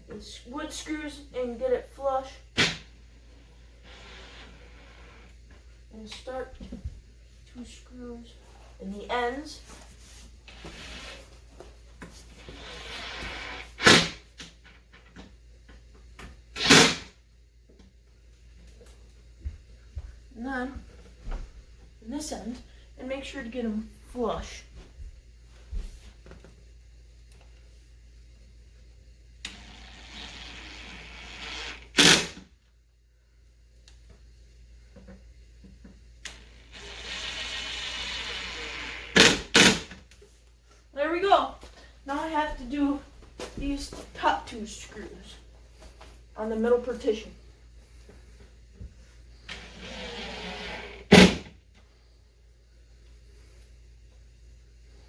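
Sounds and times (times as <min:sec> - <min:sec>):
power drill driving screws: 0:12.4 - 0:14.1, 0:16.6 - 0:17.1, 0:29.5 - 0:32.4, 0:36.3 - 0:39.9, 0:49.5 - 0:51.5.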